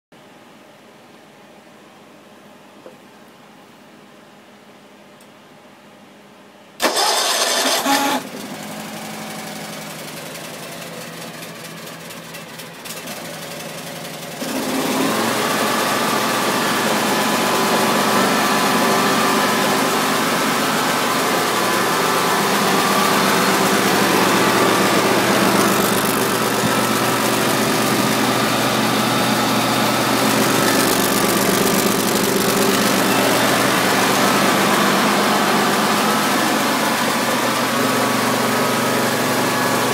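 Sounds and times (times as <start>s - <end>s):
engine starter cranking: 6.8s - 8.4s, 30.2s - 33.6s
engine running: 6.8s - 39.9s.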